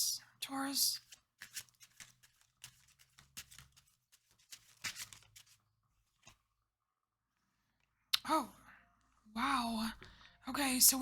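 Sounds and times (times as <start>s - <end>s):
cards rustling and tapping: 1.0s - 6.4s.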